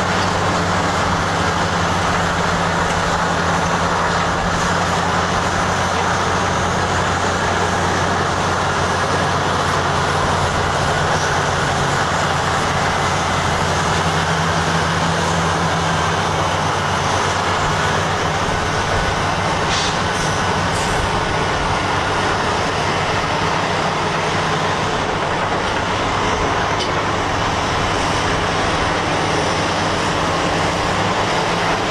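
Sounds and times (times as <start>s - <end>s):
heavy diesel engines running: 0.0s - 31.9s.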